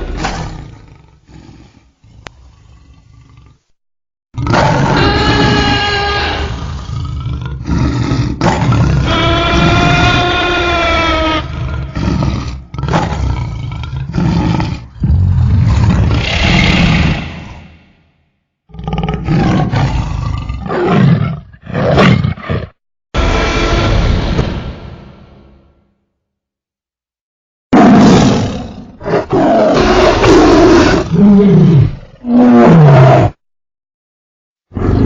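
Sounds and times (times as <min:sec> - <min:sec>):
dinosaur roars and growls: 0:04.4 - 0:18.0, 0:18.7 - 0:25.0, 0:27.8 - 0:33.4, 0:34.7 - 0:35.0.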